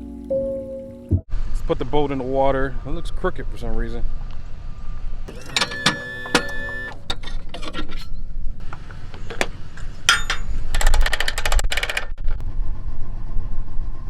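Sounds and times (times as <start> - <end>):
rapid metallic clicks: 10.2 - 12.3.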